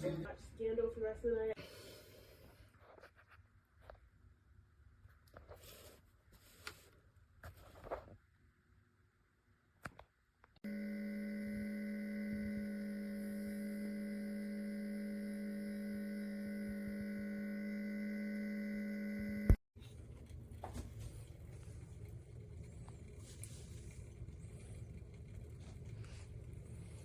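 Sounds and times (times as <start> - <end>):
electrical hum: 10.6 - 27.0.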